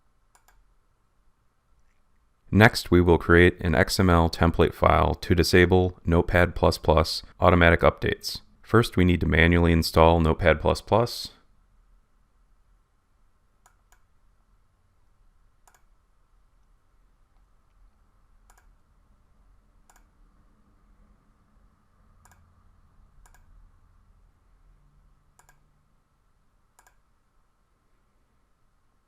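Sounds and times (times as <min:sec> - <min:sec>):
quiet steady background hum: 0:00.0 - 0:29.0
computer mouse clicks: 0:00.3 - 0:00.7, 0:13.6 - 0:14.1, 0:15.6 - 0:15.9, 0:18.4 - 0:18.8, 0:19.8 - 0:20.2, 0:22.2 - 0:22.5, 0:23.2 - 0:23.5, 0:25.4 - 0:25.7, 0:26.7 - 0:27.1.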